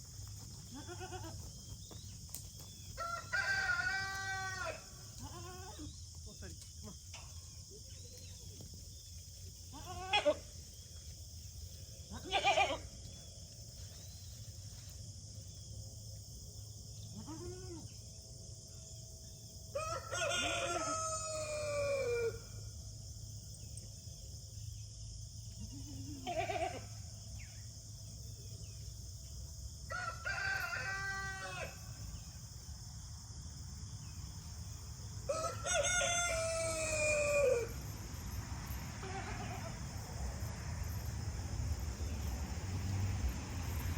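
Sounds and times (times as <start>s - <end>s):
rooster crowing: 3.0s - 4.9s, 19.7s - 22.6s, 29.9s - 31.9s, 35.3s - 37.8s.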